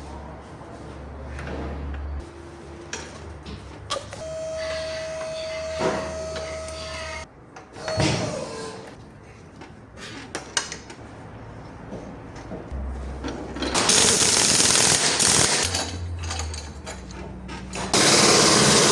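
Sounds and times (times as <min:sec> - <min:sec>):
impact wrench bursts: 0:13.8 - 0:16.0, 0:17.9 - 0:18.9.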